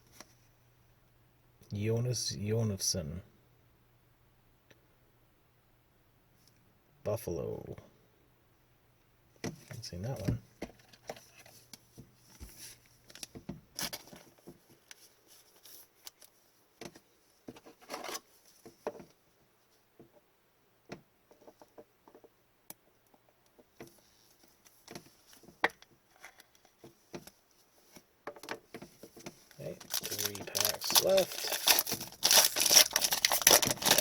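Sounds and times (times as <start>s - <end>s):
cards rustling and sliding: 29.5s - 34.0s.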